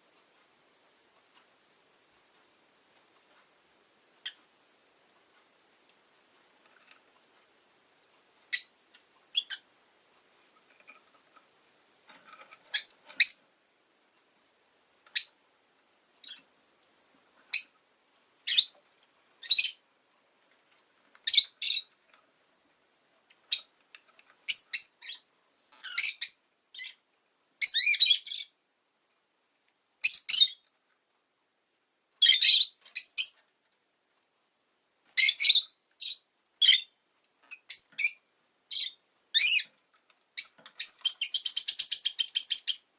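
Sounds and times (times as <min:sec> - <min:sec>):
lovebird chirping shrill calls: 0:08.5 - 0:08.7, 0:09.3 - 0:09.6, 0:12.7 - 0:13.4, 0:17.5 - 0:17.8, 0:18.5 - 0:18.8, 0:19.4 - 0:19.8, 0:21.2 - 0:21.9, 0:23.5 - 0:23.8, 0:24.5 - 0:25.2, 0:25.8 - 0:27.0, 0:27.6 - 0:28.5, 0:30.0 - 0:30.6, 0:32.2 - 0:33.4, 0:35.2 - 0:36.9, 0:37.5 - 0:39.7, 0:40.4 - 0:42.9.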